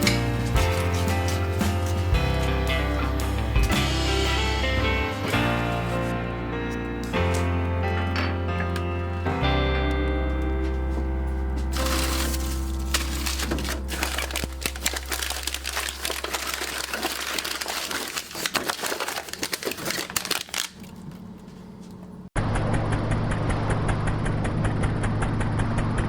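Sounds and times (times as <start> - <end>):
dense crackling and rustling: 0.0 - 3.2, 11.7 - 22.0
engine running with low hum: 21.0 - 26.0.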